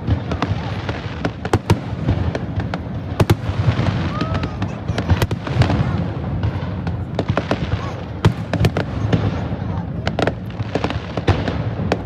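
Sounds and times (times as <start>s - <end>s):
fireworks cracks and booms: 0.0s - 12.0s
firework whistle: 3.7s - 6.0s.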